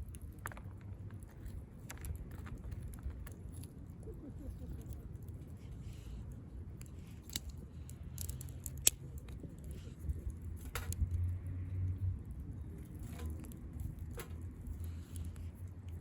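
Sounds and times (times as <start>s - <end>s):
wood fire crackling: 1.1s - 11.2s
sharp fire snaps: 2.0s - 11.3s.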